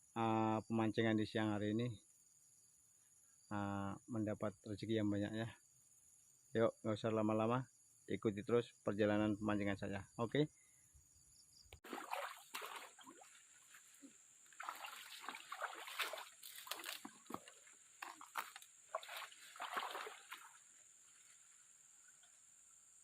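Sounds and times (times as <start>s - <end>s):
water splashing and sloshing: 11.8s - 22.6s.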